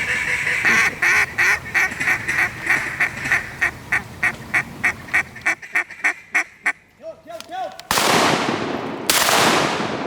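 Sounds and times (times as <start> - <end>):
duck call quacking: 0.0 - 6.8.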